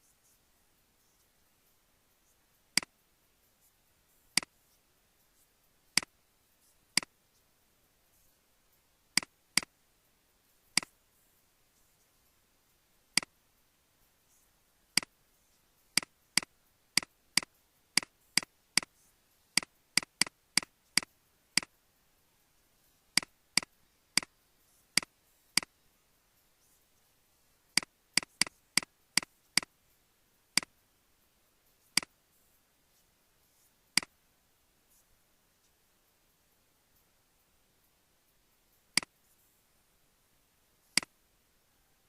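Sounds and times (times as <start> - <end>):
computer mouse clicking: 9.1 - 9.7, 10.7 - 11.0, 15.9 - 21.8, 23.1 - 24.3, 24.9 - 25.7, 27.7 - 29.7, 31.9 - 32.2, 34.0 - 34.2, 38.9 - 39.3, 40.9 - 41.2.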